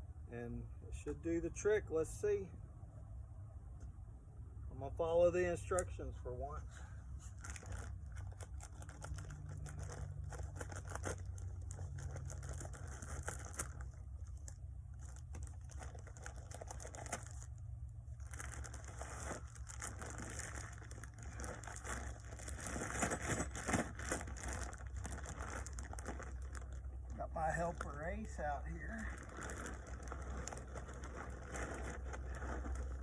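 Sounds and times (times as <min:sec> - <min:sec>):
plastic bag crinkling and tearing: 0:07.3 - 0:33.0.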